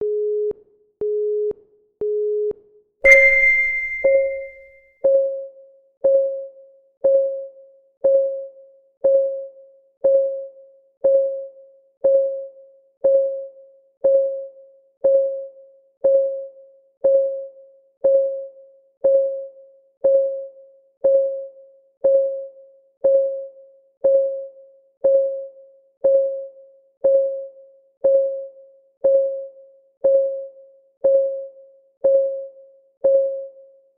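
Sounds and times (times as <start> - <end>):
bright chime: 3.1 - 4.6
short beeps: 3.1 - 4.6.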